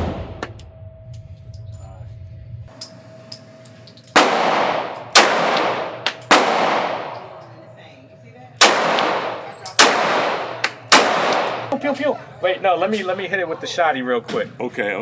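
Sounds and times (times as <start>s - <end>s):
handgun shots with echo: 4.1s - 7.4s, 8.6s - 11.7s.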